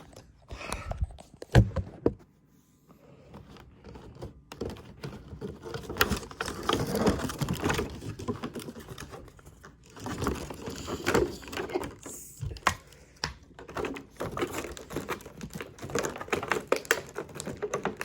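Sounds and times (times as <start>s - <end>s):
plastic packaging clicking and rustling: 3.2s - 18.0s.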